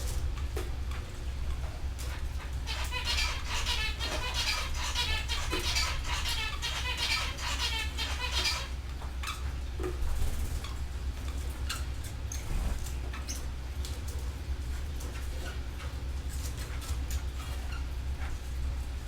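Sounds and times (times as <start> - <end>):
steady low hum: 0.0 - 19.0
canaries trilling: 1.6 - 9.5, 15.1 - 18.8.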